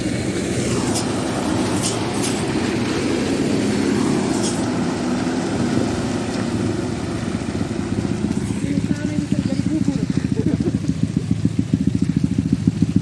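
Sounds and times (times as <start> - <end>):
large vehicle engine droning: 0.0 - 13.0
short bursts of hiss: 4.3 - 4.7.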